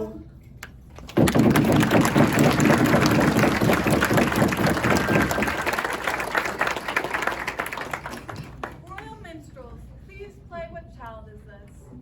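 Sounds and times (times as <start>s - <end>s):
audience applauding: 1.0s - 8.8s.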